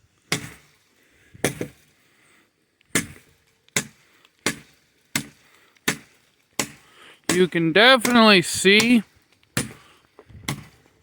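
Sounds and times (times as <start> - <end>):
blade chopping into wood: 0.3 - 0.7, 1.4 - 1.8, 2.9 - 9.8, 10.4 - 10.8.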